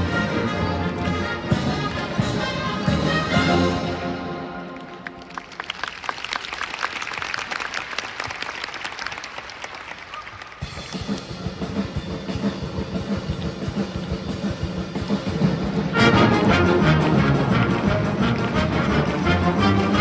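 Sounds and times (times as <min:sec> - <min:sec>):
bass drums heavy beat: 0:10.7 - 0:20.0.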